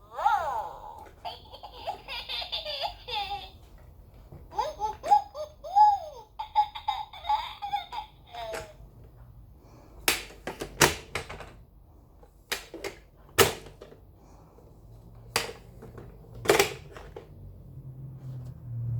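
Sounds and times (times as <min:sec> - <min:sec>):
plastic baby toy clicking and knocking: 0:10.0 - 0:11.6, 0:12.4 - 0:14.0, 0:15.3 - 0:17.3.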